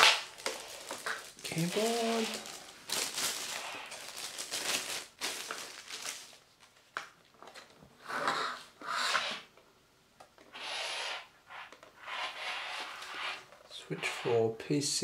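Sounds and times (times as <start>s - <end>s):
packaging rubbing and rustling: 0.0s - 6.9s.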